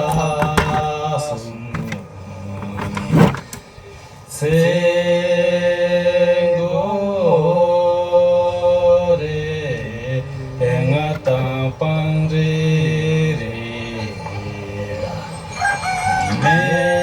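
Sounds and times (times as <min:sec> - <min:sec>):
person chanting long notes: 0:04.3 - 0:17.0.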